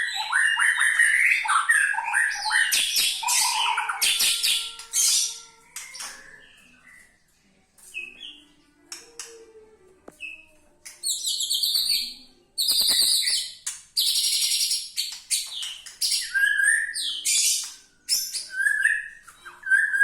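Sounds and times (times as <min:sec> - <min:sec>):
bird singing varied trills: 0:11.0 - 0:20.0.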